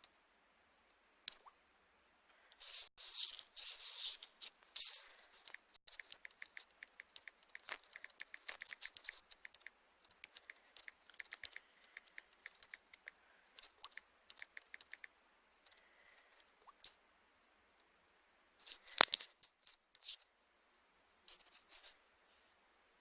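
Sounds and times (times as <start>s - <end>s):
faint irregular clicking: 4.2s - 17.0s.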